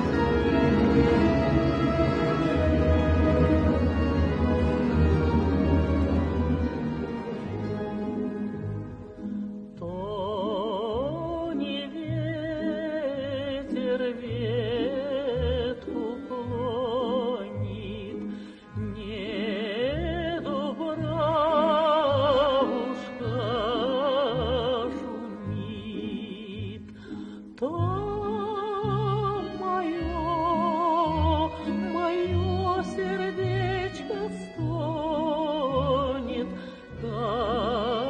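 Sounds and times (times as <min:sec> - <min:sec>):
woman singing with vibrato: 0:09.8 - 0:27.0, 0:27.6 - 0:38.0.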